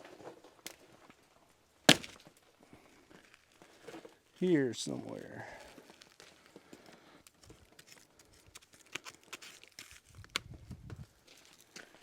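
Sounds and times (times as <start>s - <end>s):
gypsum crumbling: 0.1s - 12.0s
paper tearing: 7.8s - 10.3s.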